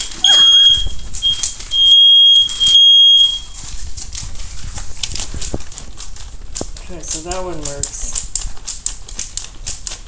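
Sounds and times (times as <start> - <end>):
smoke alarm beeping: 0.0 - 3.6.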